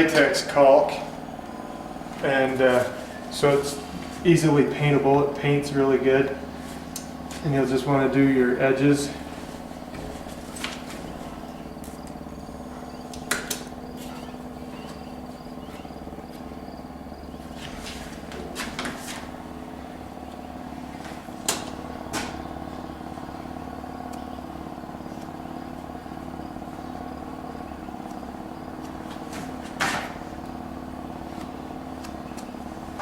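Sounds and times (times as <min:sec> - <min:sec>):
motor-like hum: 0:00.0 - 0:33.0
handling noises: 0:09.1 - 0:16.6.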